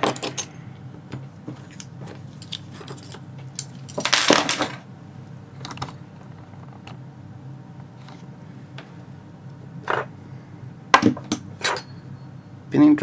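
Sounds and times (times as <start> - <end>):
small metal parts clinking: 0.0 - 0.6, 1.2 - 4.8.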